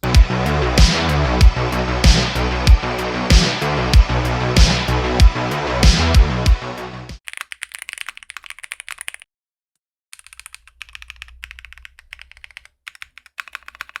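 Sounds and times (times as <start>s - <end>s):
mechanical keyboard typing: 7.2s - 9.2s, 10.2s - 14.0s.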